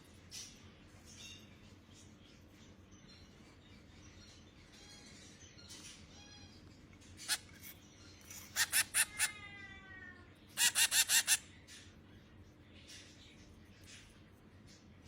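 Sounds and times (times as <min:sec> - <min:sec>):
baby finch cheeping: 0:03.1 - 0:09.4, 0:10.4 - 0:12.0.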